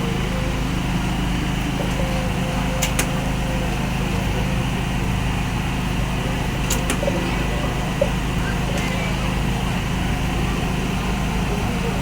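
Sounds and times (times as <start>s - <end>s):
low mechanical hum: 0.0s - 12.0s
sharp clicks: 2.8s - 3.1s.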